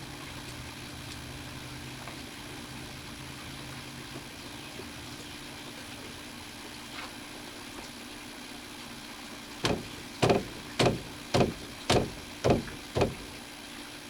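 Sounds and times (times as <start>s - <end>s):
sharp knocks on drain pipe: 9.6s - 13.4s.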